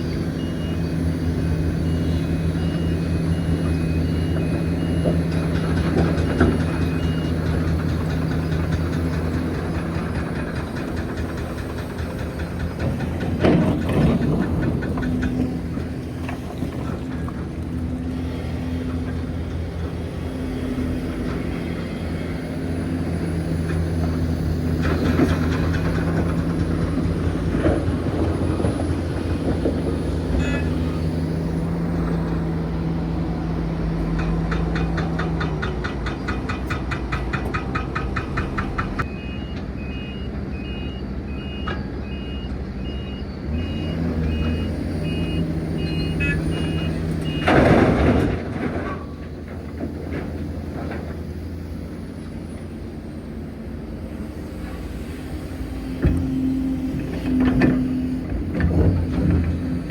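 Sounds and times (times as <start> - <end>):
truck reversing alarm beeps: 0.0 - 15.8, 21.9 - 32.7, 37.5 - 49.1
excavator diesel engine: 0.0 - 59.9.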